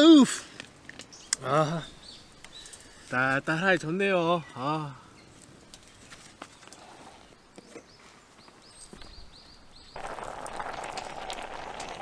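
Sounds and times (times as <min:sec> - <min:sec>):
loud hiss with crackles: 0:10.0 - 0:12.0
wood fire crackling: 0:10.0 - 0:12.0.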